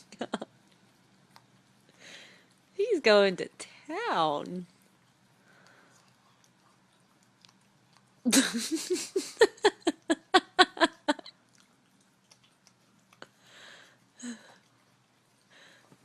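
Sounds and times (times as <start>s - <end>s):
dog licking: 4.8s - 8.2s, 11.4s - 15.5s
person laughing hard: 8.3s - 11.3s.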